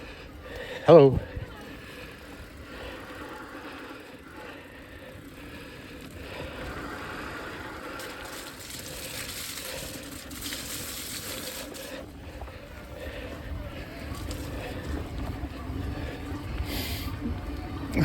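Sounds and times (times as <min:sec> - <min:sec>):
mountain bike on dirt trail: 0:00.0 - 0:18.0.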